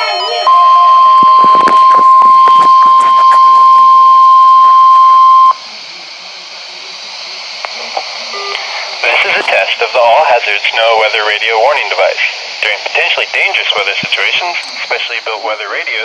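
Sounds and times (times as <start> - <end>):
loud steady alarm tone: 0.0 - 5.6
radio hiss: 1.4 - 16.0.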